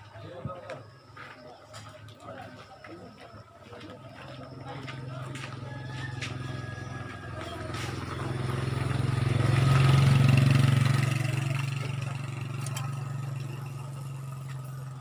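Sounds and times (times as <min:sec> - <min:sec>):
vehicle engine passing by: 0:04.5 - 0:15.0.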